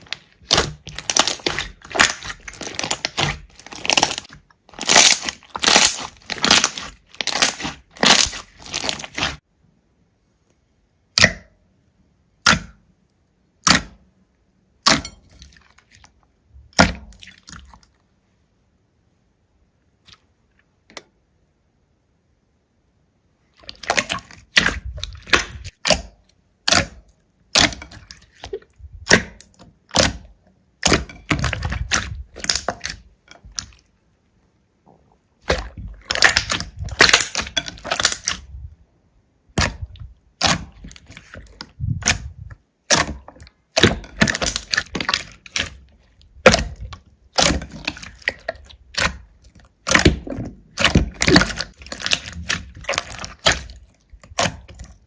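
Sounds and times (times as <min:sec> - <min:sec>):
slime crackling and popping: 0:00.0 - 0:09.4, 0:23.6 - 0:33.8, 0:35.4 - 0:38.5, 0:39.5 - 0:55.0.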